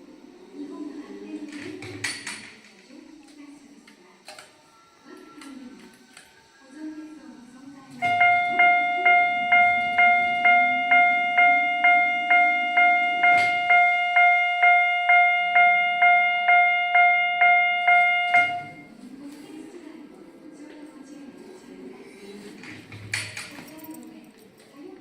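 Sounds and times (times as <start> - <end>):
level crossing alarm bell: 8.0 - 19.0.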